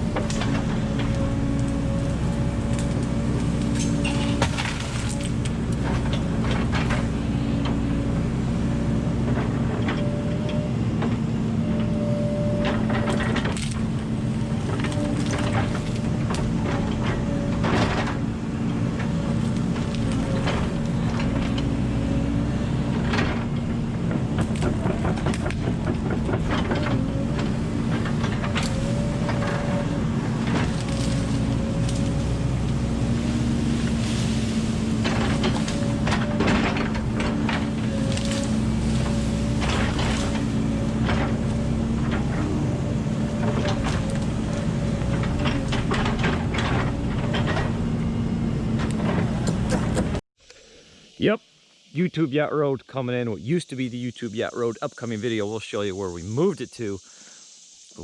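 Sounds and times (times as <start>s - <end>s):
wood cracking and crunching: 0.0s - 7.8s, 12.7s - 47.8s
excavator diesel engine running: 0.0s - 50.2s.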